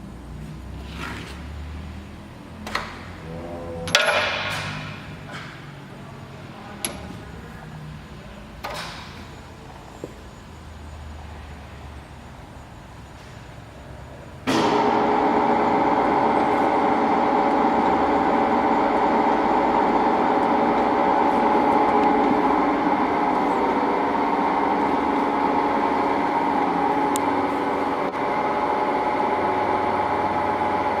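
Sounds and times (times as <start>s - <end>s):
surface grinder running: 14.6s - 31.0s.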